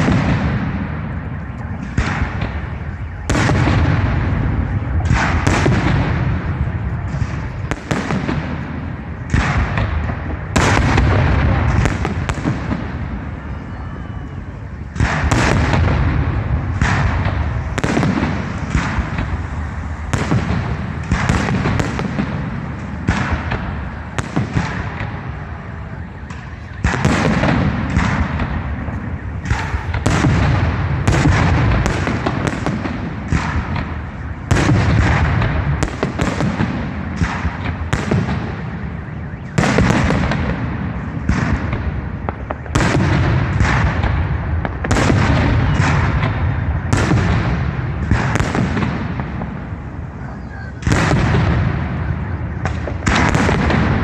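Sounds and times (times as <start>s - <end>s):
continuous rumble: 0.0s - 54.0s
fireworks bursting: 0.0s - 54.0s.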